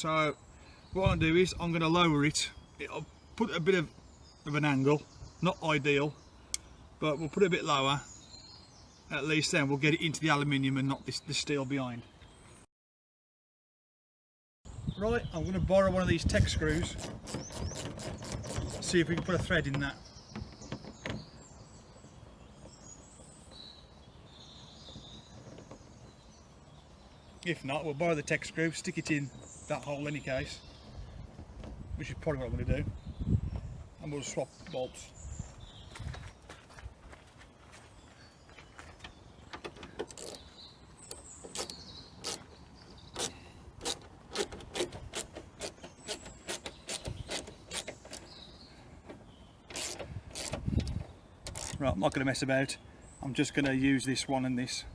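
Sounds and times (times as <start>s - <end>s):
faint birdsong: 0.0s - 12.7s, 14.7s - 54.9s
hand tools clicking on metal: 40.0s - 40.4s, 49.7s - 51.8s.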